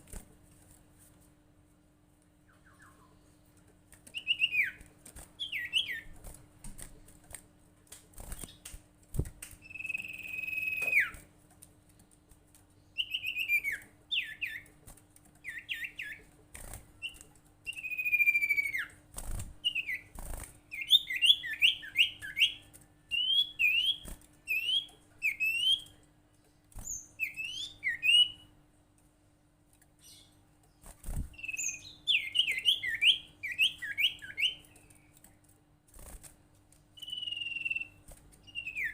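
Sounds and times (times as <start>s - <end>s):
faint steady hum: 0.0s - 38.9s
songbird chirping: 2.2s - 6.2s, 9.6s - 11.3s, 11.9s - 14.7s, 17.0s - 19.0s, 29.8s - 35.5s, 36.9s - 38.9s.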